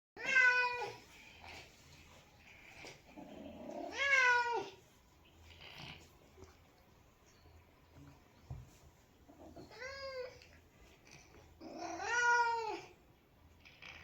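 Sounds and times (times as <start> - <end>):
cat meowing: 0.2 - 1.0, 3.6 - 4.8, 11.6 - 12.9.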